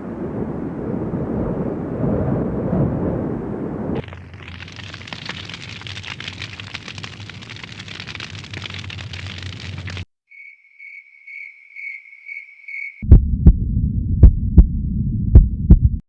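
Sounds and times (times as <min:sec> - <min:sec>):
fire crackling: 0:03.7 - 0:10.1
crickets chirping: 0:10.3 - 0:13.0.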